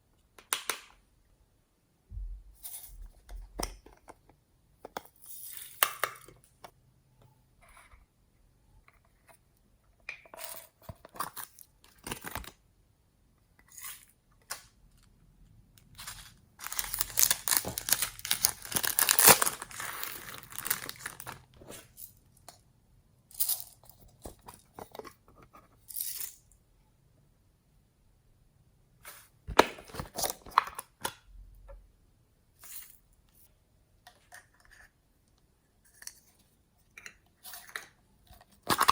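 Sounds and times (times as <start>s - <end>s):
slime crackling and popping: 16.6s - 21.3s.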